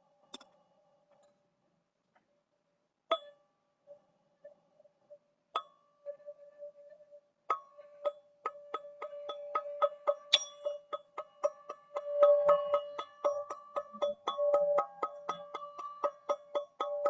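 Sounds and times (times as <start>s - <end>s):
metal chime struck with mallet: 10.2s - 10.8s.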